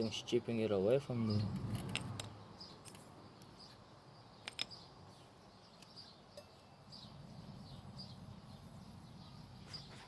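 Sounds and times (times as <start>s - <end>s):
faint bird chirps: 2.4s - 10.0s.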